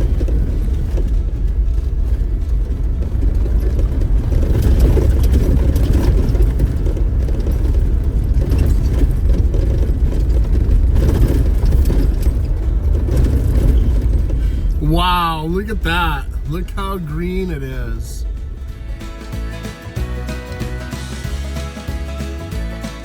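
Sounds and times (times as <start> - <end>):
engine and tyre rumble: 0.0 - 14.8, 18.2 - 22.9.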